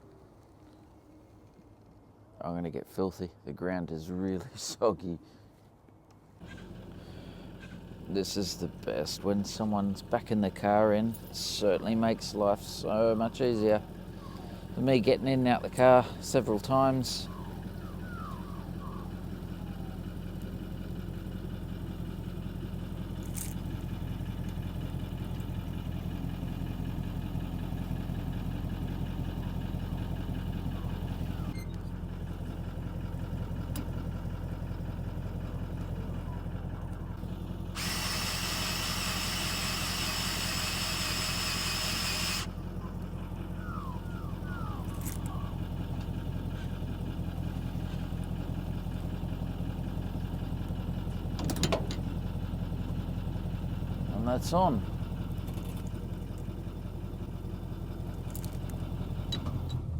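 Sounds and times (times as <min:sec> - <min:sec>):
car engine idling: 0:06.3 - 0:59.9.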